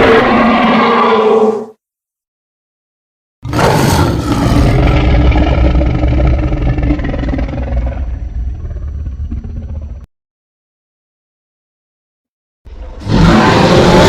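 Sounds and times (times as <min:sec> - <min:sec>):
deep monster roar: 0:00.0 - 0:01.7, 0:03.4 - 0:10.1, 0:12.7 - 0:14.0.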